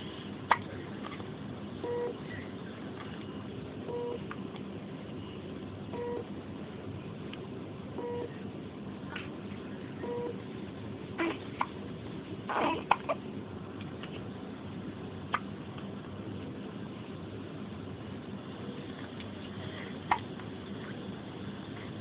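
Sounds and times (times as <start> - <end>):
monitor beeping: 1.8 - 2.2, 3.1 - 4.3, 5.2 - 6.3, 8.0 - 8.4, 10.0 - 10.4.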